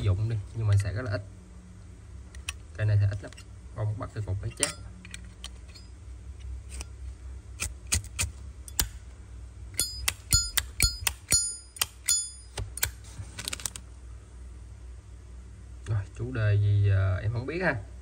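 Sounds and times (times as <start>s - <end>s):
lighter metal clicks: 7.6s - 9.0s.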